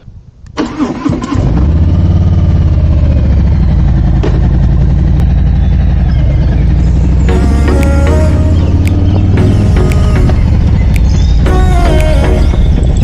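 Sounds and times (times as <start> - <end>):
motorcycle engine idling: 1.7 - 13.0
music: 7.3 - 13.0.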